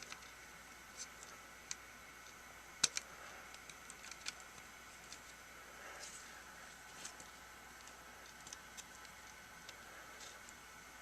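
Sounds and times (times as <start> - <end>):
plastic parts clicking: 2.8 - 5.4.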